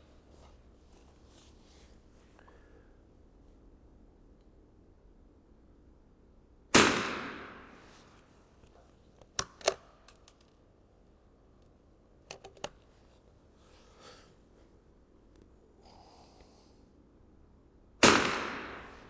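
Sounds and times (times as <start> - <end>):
rifle shot with echo: 6.7 - 7.9, 18.0 - 19.0
metallic rifle action clicks: 9.2 - 10.6.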